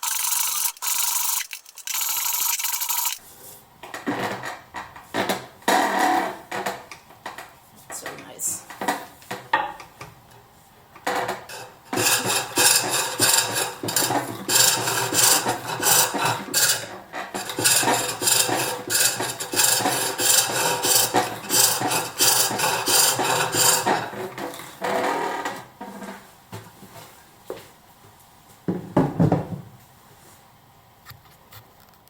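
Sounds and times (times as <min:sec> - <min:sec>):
turning tool scraping green wood: 0:00.0 - 0:03.2, 0:11.4 - 0:25.5.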